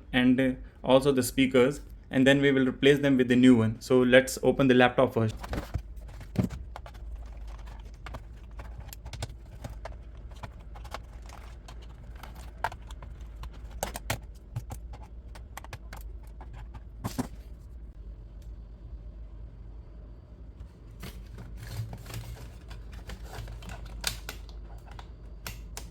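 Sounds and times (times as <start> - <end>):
low steady hum: 0.0 - 25.9
clicks and knocks on plastic case: 5.3 - 17.4.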